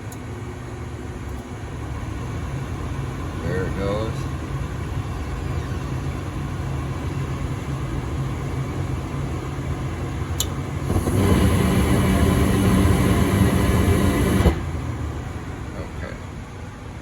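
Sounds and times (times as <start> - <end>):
gas furnace humming: 0.0 - 17.0
burners lighting with rushing sound: 10.4 - 15.0.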